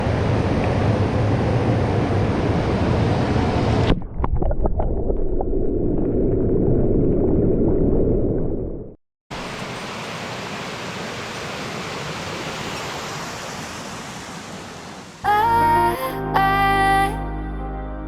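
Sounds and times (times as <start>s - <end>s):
stream water rushing: 9.3s - 15.4s.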